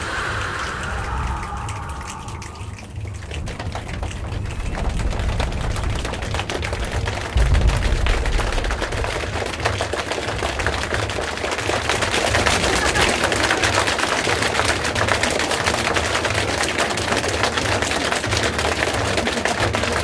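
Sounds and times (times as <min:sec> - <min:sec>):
low pulsing rumble: 0:00.0 - 0:13.6.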